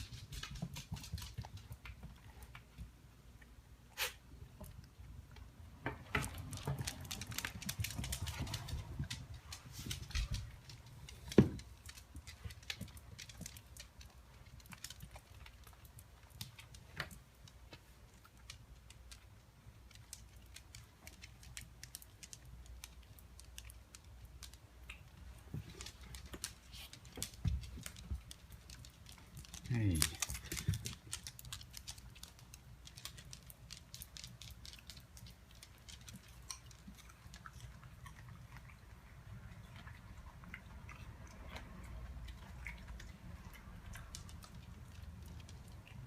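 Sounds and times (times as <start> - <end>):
rustling and shuffling: 4.6 - 23.0, 23.8 - 36.2.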